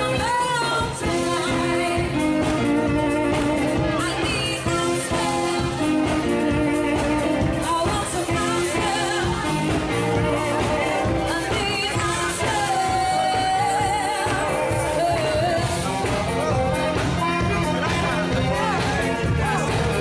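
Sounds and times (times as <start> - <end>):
live band music: 0.0 - 20.0
person singing: 0.0 - 20.0.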